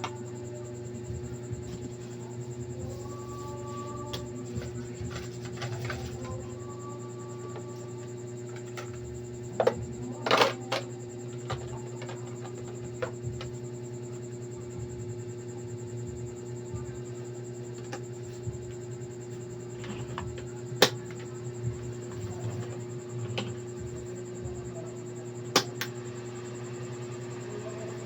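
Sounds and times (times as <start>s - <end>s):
steady hum: 0.0s - 28.0s.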